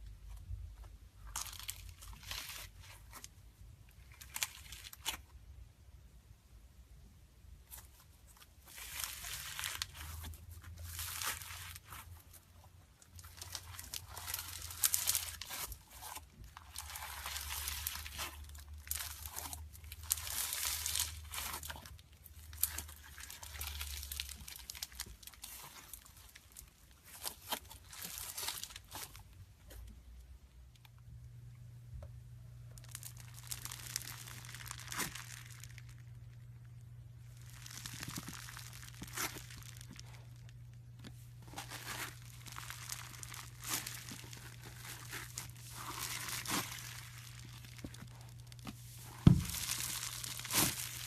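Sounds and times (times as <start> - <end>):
slime squeezed by hand: 41.6 - 51.0.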